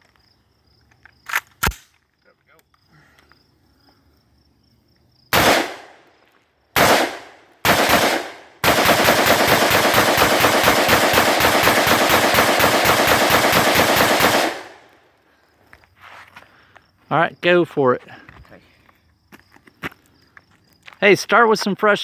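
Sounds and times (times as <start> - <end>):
rifle shots: 5.3 - 6.1, 6.8 - 15.0.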